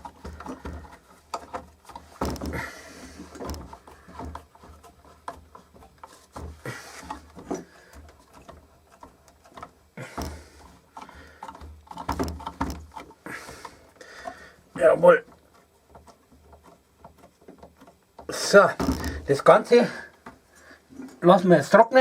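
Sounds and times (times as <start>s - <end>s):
wooden clamp knocks: 0.0s - 13.1s, 15.3s - 19.3s
scraping handling noises: 0.0s - 21.5s.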